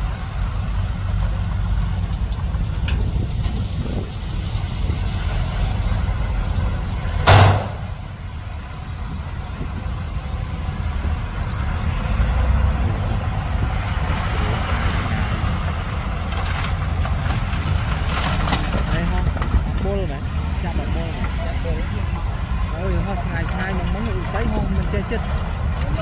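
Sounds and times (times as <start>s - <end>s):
diesel truck engine rumbling: 0.0s - 26.0s
loud burst of noise: 7.2s - 8.2s.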